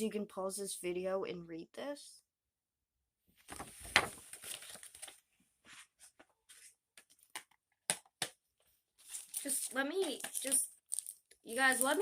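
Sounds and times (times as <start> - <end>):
plastic sleeve crinkling: 9.0 - 12.0.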